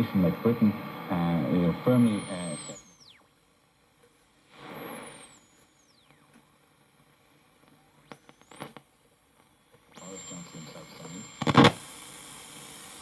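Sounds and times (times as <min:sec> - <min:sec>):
radio static burst: 0:00.0 - 0:03.0, 0:04.5 - 0:05.8, 0:10.0 - 0:13.0
radio tuning whistles: 0:00.0 - 0:03.3, 0:04.5 - 0:06.3, 0:07.8 - 0:08.8, 0:10.0 - 0:13.0.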